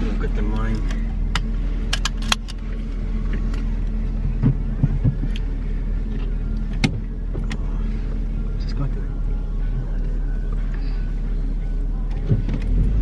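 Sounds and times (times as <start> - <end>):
car engine drone and road noise: 0.0 - 13.0
soft low thumps: 2.6 - 13.0.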